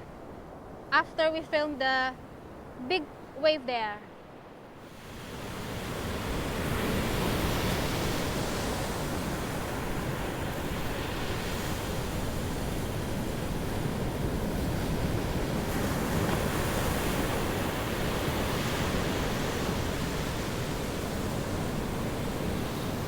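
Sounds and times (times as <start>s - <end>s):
ocean waves breaking on rocks: 4.8s - 23.0s.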